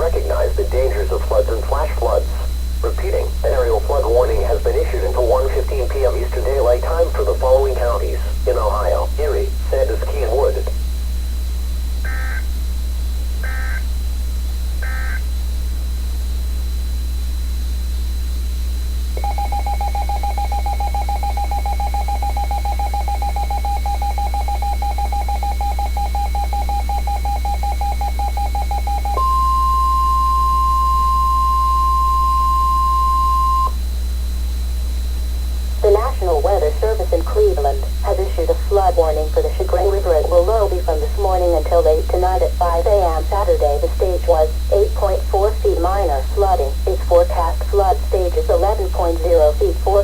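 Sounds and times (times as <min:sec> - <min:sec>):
low mains hum: 0:00.0 - 0:50.0
buzzing two-tone attention signal: 0:12.0 - 0:12.6, 0:13.4 - 0:14.0, 0:14.8 - 0:15.4, 0:19.2 - 0:33.9
short data squawks: 0:13.4 - 0:13.8.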